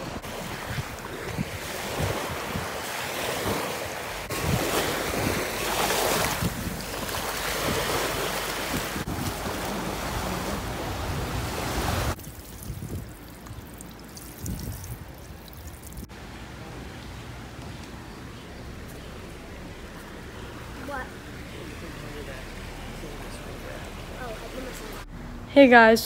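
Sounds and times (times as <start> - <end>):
ocean surf washing ashore: 0.0 - 15.2
wind buffeting microphone: 0.0 - 16.1.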